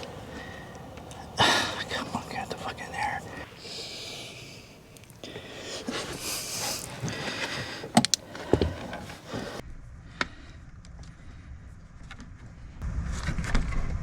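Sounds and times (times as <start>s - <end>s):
rustling and fiddling with wires: 4.2s - 9.6s
sharp clicks and knocks: 6.9s - 9.6s.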